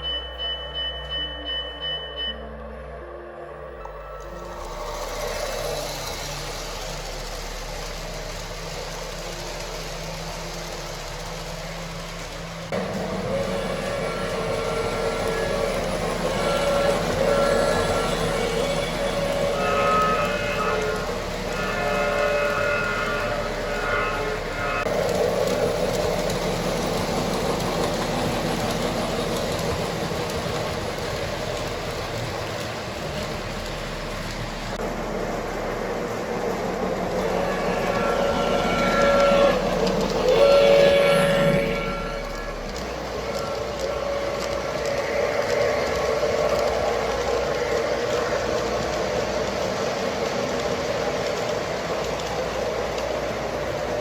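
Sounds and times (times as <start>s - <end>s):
model train rumbling on track: 0.0s - 54.0s
model train horn blasts: 12.8s - 25.0s, 37.0s - 46.6s.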